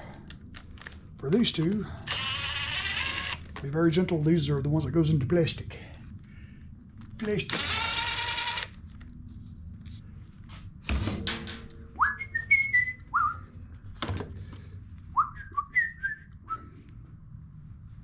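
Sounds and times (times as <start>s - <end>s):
sharp metal knock: 10.9s - 12.0s
person whistling: 12.0s - 13.4s, 15.2s - 16.7s.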